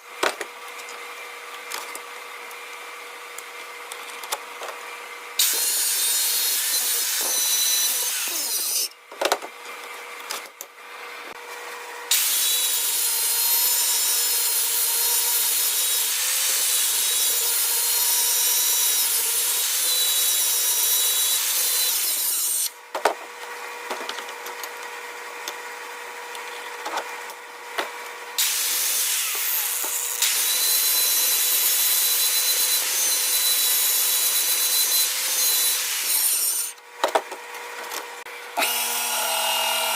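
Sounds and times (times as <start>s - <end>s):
power sander grinding steel blade: 38.3s - 39.9s.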